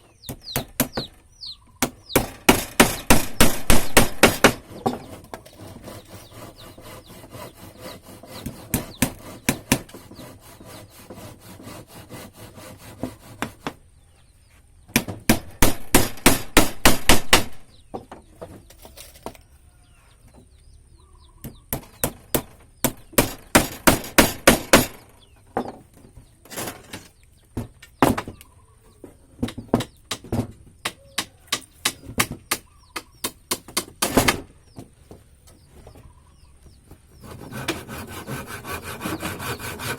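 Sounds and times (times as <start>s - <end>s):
hammer blows on wood: 1.8s - 5.2s, 5.8s - 13.8s.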